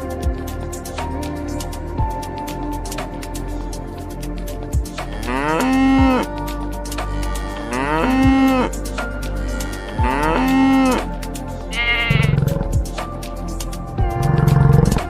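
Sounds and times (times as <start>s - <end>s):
background music with steady beat: 0.0s - 15.0s
cow mooing: 5.2s - 6.3s, 7.5s - 8.7s, 9.6s - 11.1s, 11.7s - 12.6s.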